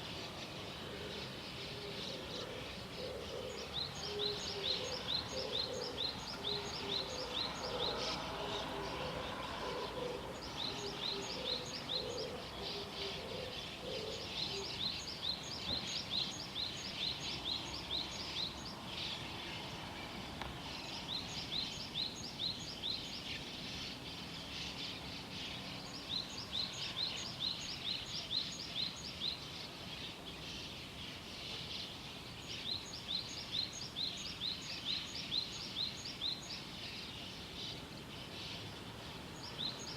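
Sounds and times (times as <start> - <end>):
outdoor background hiss: 0.0 - 39.9
songbirds chirping: 0.0 - 39.9.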